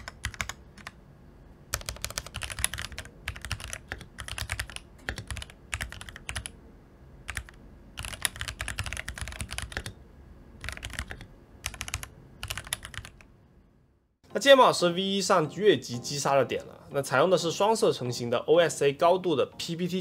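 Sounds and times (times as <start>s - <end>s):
mechanical keyboard keystrokes clacking: 0.0s - 0.9s, 1.7s - 6.5s, 7.3s - 10.0s, 10.6s - 13.2s.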